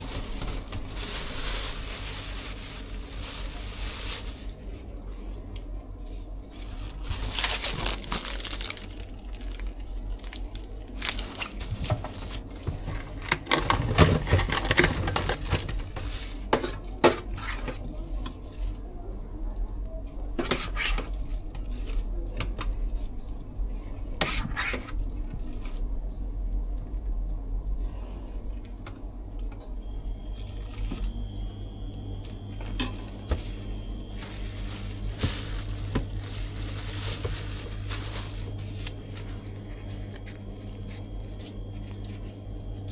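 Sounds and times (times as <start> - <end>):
rustling and tearing: 0.0 - 4.9, 6.3 - 16.6, 33.2 - 42.3
steady low hum: 0.0 - 42.9
utensils and containers clinking: 11.0 - 17.8.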